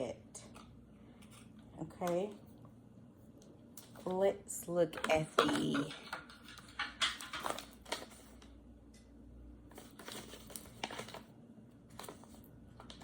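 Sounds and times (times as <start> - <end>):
paper crinkling: 9.7 - 13.0.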